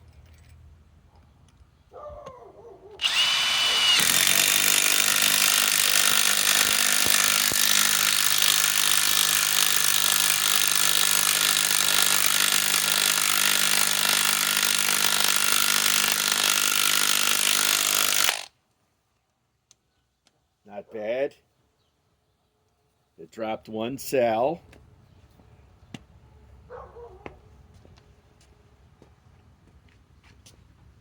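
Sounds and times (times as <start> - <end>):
impact wrench hammering: 3.0 - 18.5.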